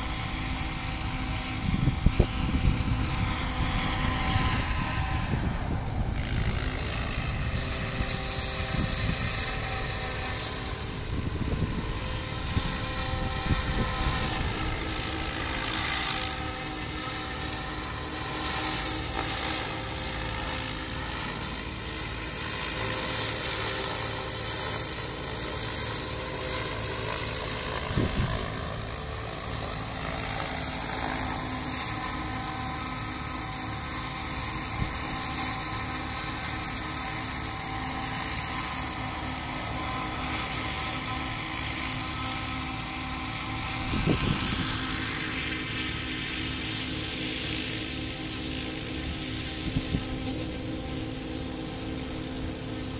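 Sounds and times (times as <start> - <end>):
model helicopter rotor whine: 0.0 - 52.9
wind buffeting microphone: 1.0 - 15.6, 27.7 - 28.6, 43.5 - 45.0, 49.6 - 50.2.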